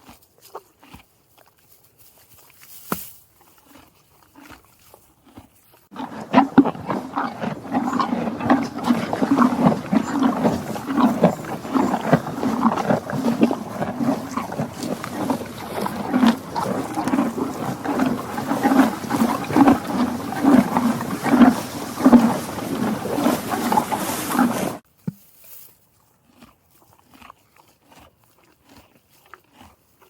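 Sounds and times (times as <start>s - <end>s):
loud continuous animal noise: 5.9s - 24.8s
faint clicks and snuffles: 6.0s - 24.8s.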